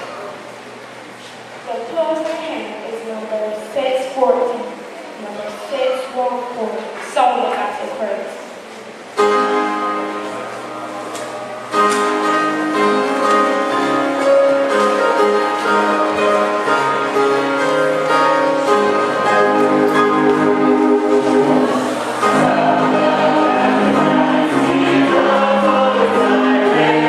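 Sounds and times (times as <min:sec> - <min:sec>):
sustained hymn chords: 0:09.1 - 0:27.0.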